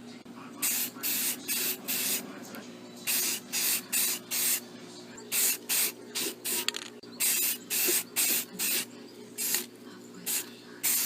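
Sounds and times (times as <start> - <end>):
spray paint hissing: 0.6 - 2.2, 3.1 - 4.6, 5.3 - 9.7, 10.3 - 11.0.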